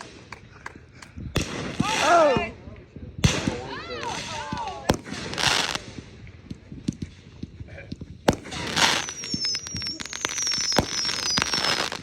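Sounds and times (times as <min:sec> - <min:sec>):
firework bangs: 0:00.0 - 0:02.5, 0:03.2 - 0:12.0
crackling pops: 0:03.2 - 0:12.0
falling firework whistles: 0:08.3 - 0:12.0
firework hiss: 0:08.3 - 0:12.0.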